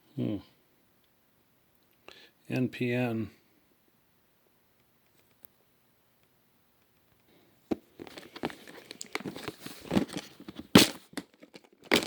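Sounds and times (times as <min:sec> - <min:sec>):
handling noises: 0:07.7 - 0:12.0
packets rustling and crinkling: 0:07.9 - 0:12.0.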